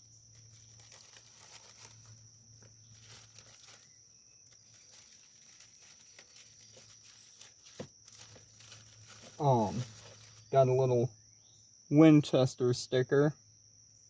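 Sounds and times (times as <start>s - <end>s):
paper rustling: 0.3s - 10.5s.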